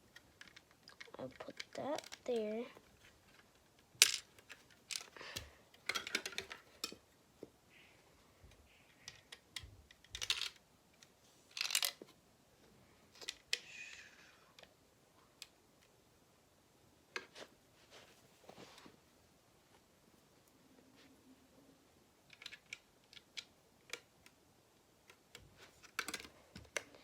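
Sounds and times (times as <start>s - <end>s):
plastic bricks clicking and rattling: 0.1s - 7.0s, 9.0s - 10.6s, 11.5s - 12.1s, 22.3s - 24.1s, 25.1s - 27.0s.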